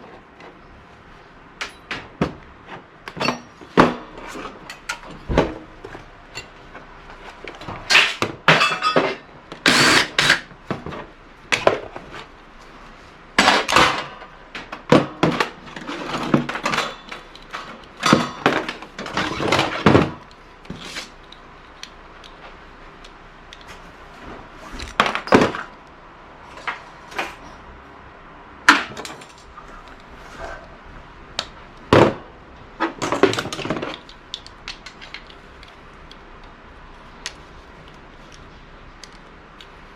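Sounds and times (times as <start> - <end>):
metal clanks and knocks: 7.7 - 9.3, 13.4 - 20.2.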